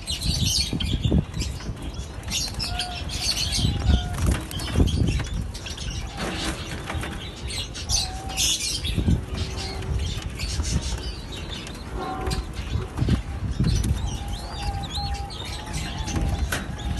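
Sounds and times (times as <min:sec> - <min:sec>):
soft bird calls: 0:00.0 - 0:16.9
birds flapping wings: 0:03.5 - 0:05.3.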